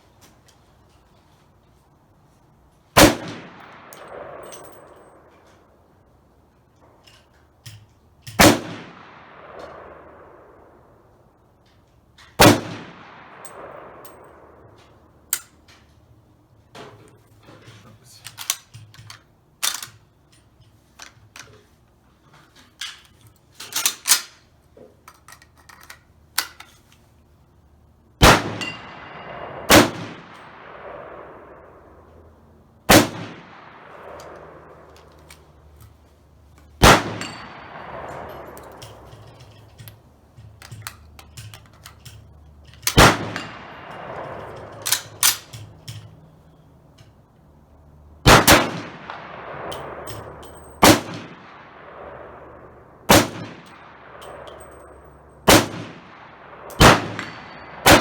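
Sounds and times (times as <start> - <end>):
rifle shots echoing: 3.0 - 5.8, 8.4 - 11.3, 12.4 - 15.6, 28.2 - 35.8, 36.7 - 41.0, 42.8 - 45.8, 48.2 - 58.0.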